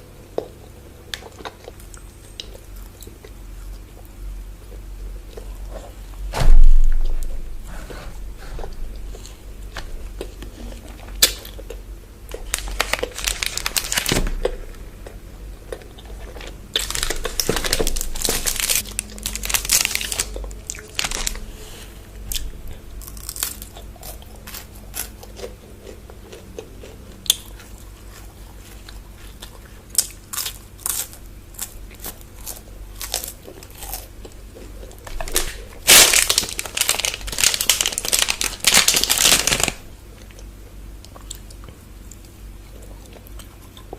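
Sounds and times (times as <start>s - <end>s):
crunchy bites and chewing: 10.1s - 21.5s, 22.3s - 43.9s
wrapper crinkling: 12.3s - 14.5s, 16.3s - 21.6s, 35.0s - 39.8s.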